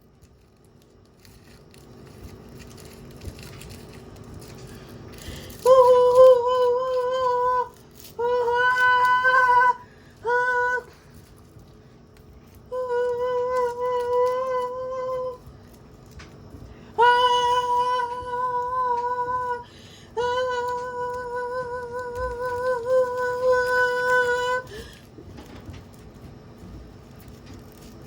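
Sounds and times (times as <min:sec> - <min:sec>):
high voice singing ooh: 0:05.6 - 0:11.1, 0:12.7 - 0:15.5, 0:16.9 - 0:24.8.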